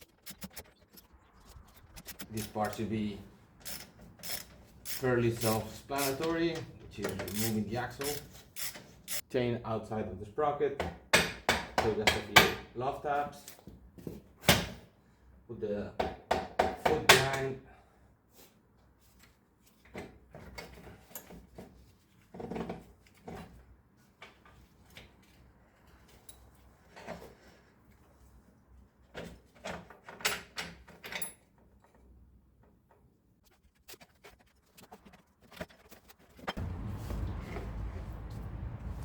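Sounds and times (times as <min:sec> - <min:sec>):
metal parts clunking and scraping: 0:03.6 - 0:09.2.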